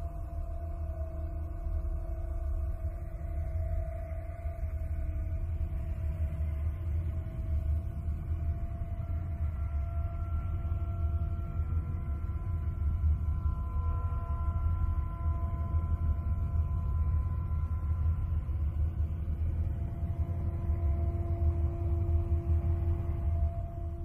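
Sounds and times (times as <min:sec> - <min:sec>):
deep steady rumble: 0:00.0 - 0:24.0
long held tones: 0:00.0 - 0:24.0.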